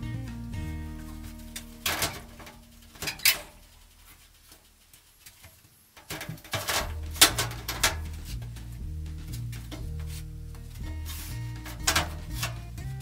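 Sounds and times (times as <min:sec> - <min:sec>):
background music: 0:00.0 - 0:03.0, 0:06.8 - 0:13.0.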